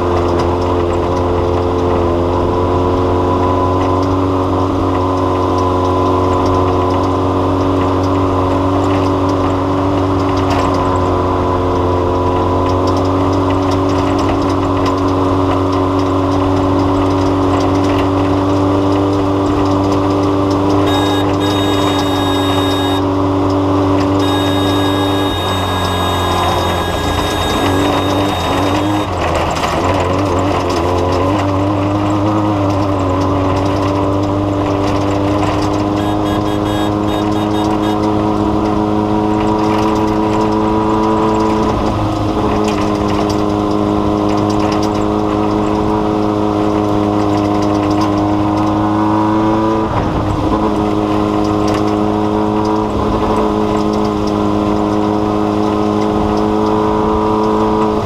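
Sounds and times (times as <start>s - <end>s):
droning motor: 20.8s - 23.2s, 24.2s - 29.4s, 35.3s - 39.1s.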